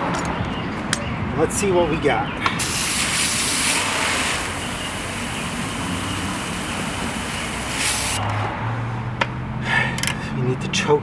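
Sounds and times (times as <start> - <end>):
small engine running: 2.6 - 8.3.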